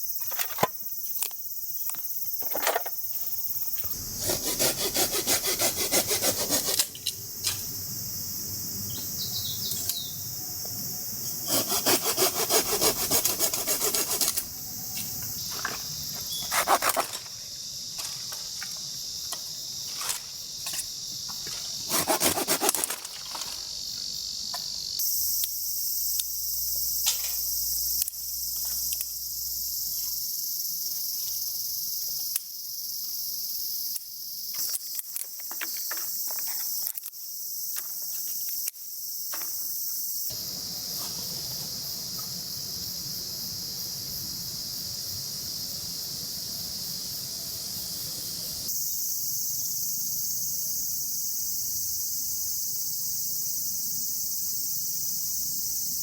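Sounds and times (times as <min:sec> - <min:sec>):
insects calling: 0:00.0 - 0:56.0
hand saw cutting wood: 0:03.9 - 0:07.7, 0:11.3 - 0:14.6, 0:16.3 - 0:17.3, 0:21.8 - 0:23.4.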